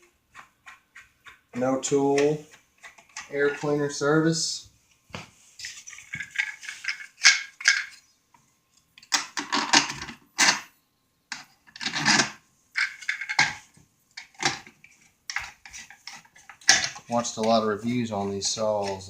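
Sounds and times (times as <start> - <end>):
hard plastic clattering and rattling: 5.6 - 8.0, 9.0 - 10.6, 11.3 - 17.6.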